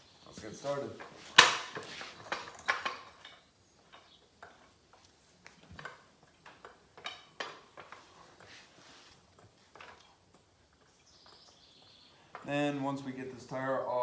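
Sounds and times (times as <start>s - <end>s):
metal tools clinking: 0.2s - 4.8s.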